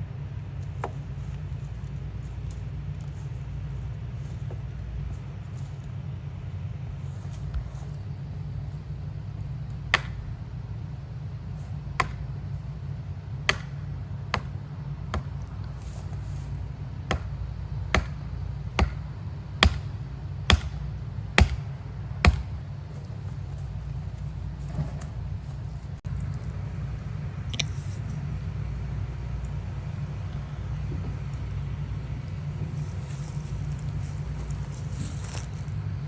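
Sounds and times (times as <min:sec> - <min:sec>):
low engine rumble: 0:00.0 - 0:36.0
sharp knocks: 0:09.7 - 0:10.4, 0:11.9 - 0:12.4, 0:13.4 - 0:15.5, 0:17.1 - 0:22.7.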